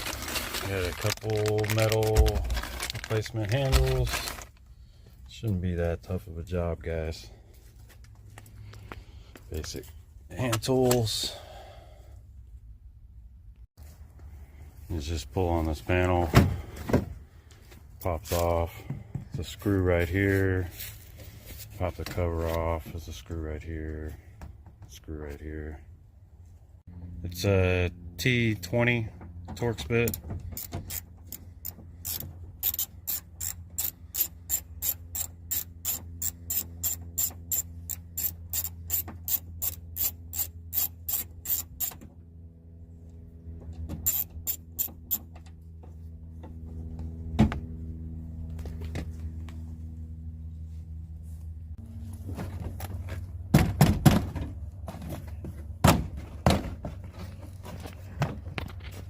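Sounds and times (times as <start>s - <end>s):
ratchet clicking: 30.6s - 42.0s, 44.0s - 45.3s.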